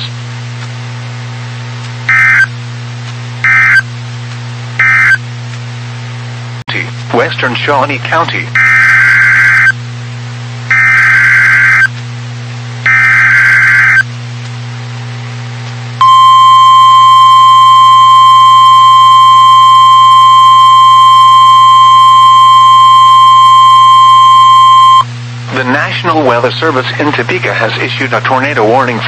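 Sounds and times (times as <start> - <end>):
harsh digital data bursts: 2.1 - 2.5, 3.5 - 3.8, 4.8 - 5.2, 8.6 - 9.7, 10.7 - 11.9, 12.9 - 14.0
steady warning alarm tone: 2.1 - 2.5, 3.4 - 3.9, 4.8 - 5.2, 8.6 - 9.8, 10.7 - 11.9, 12.8 - 14.0, 16.0 - 25.0.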